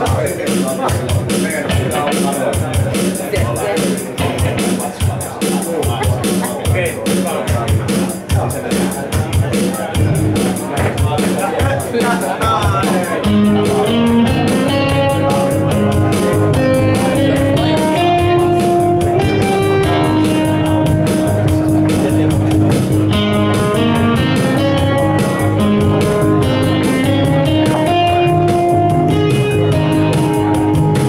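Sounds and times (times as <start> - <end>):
drum machine beat: 0.0 - 31.0
guitar playing: 0.0 - 31.0.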